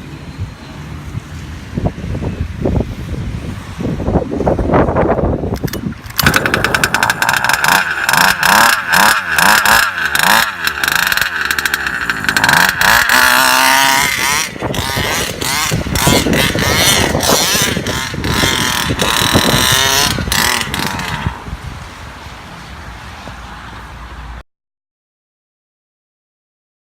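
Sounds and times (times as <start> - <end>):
small two-stroke engine revving: 5.6 - 21.6.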